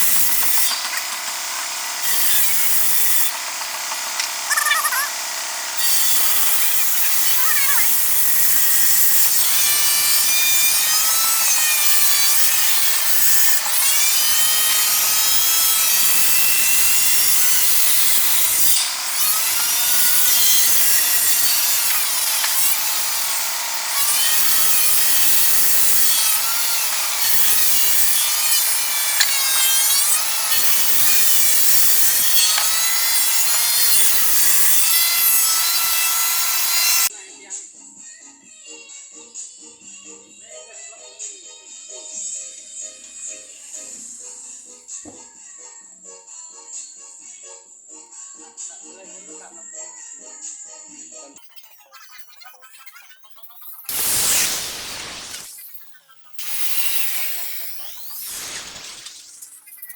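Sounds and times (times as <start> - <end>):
wood being sawn: 0.0 - 37.1, 53.9 - 55.6, 56.4 - 59.5.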